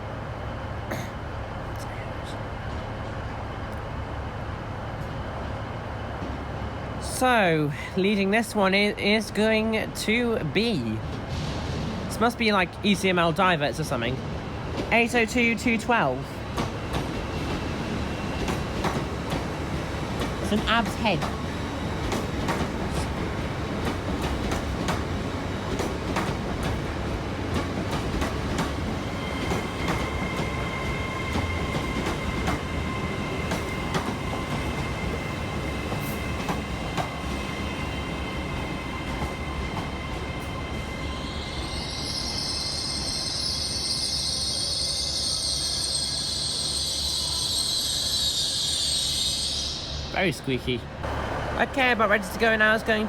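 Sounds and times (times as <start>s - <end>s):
train whine: 0.0s - 53.0s
train wheels clicking over rail joints: 16.4s - 37.8s
high-pitched brake squeal: 40.5s - 50.5s.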